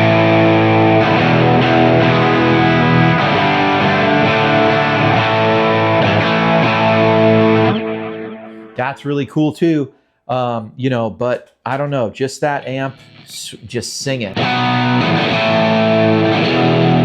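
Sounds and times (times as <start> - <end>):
overdriven electric guitar chords: 0.0 - 8.8, 12.6 - 13.4, 14.2 - 17.0.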